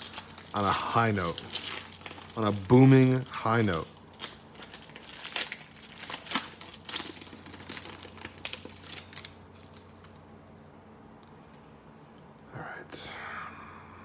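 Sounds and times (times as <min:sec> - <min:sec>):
wrapper crinkling and crackling: 0:00.0 - 0:10.2.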